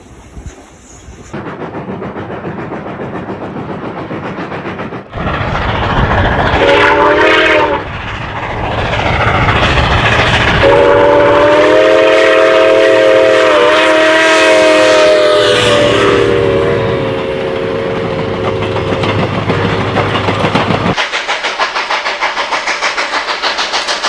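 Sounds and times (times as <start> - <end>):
locomotive rumble: 1.1 - 24.0
train wheels clattering: 1.2 - 13.6, 16.6 - 24.0
train air horn blasts: 6.6 - 7.8, 10.6 - 18.6.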